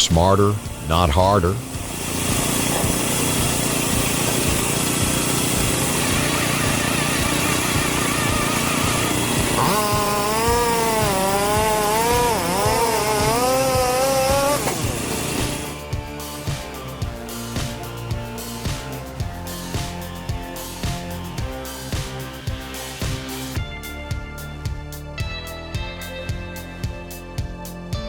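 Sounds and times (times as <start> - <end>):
saw whining through log: 1.6 - 16.0
firewood processor clattering: 1.8 - 15.8.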